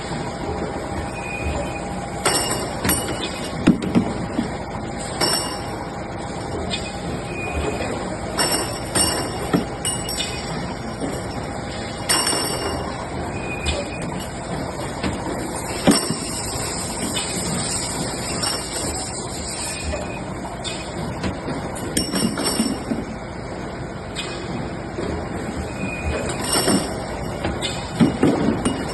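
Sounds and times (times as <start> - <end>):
machine mechanical din: 0.0 - 28.9
sharp metallic clanks: 8.4 - 10.5, 12.0 - 13.0.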